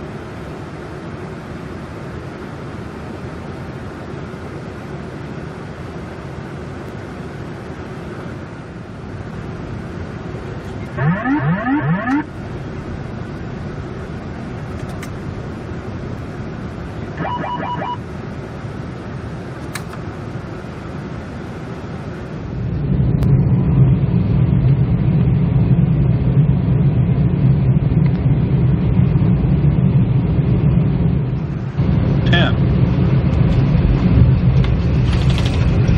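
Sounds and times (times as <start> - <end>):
engines and airflow rumble: 0.0 - 35.9
rapid beeps: 10.9 - 12.3, 17.2 - 18.0.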